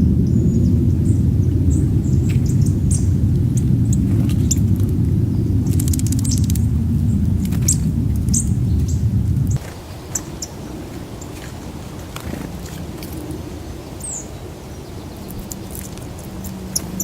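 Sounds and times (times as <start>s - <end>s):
heavy low rumble: 0.0s - 9.7s
small birds chirping: 0.0s - 17.0s.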